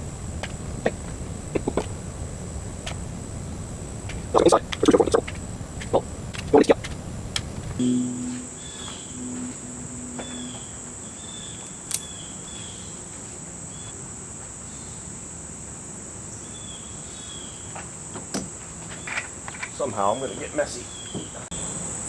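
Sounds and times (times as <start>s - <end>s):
high-pitched insect chorus: 0.0s - 17.7s
faint chirps: 7.4s - 12.9s.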